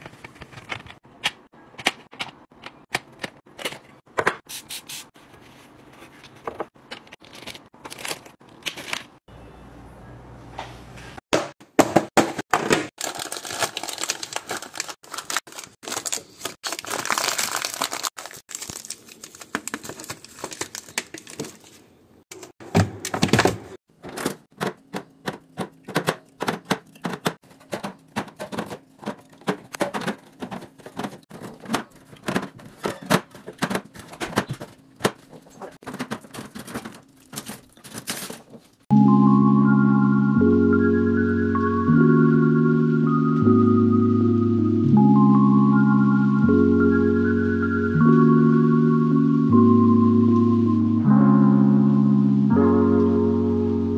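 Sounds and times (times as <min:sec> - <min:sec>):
food containers handled: 0:18.7 - 0:38.8.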